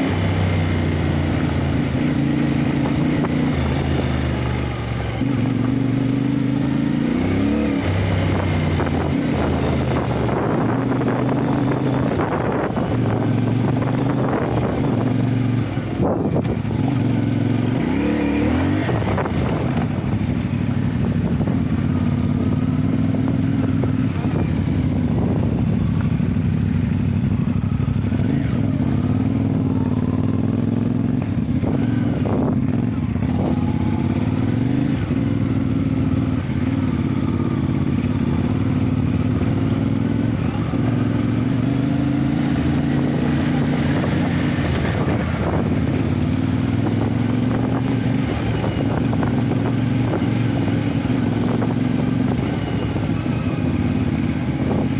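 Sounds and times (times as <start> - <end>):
motorcycle engine running: 0.0 - 54.9.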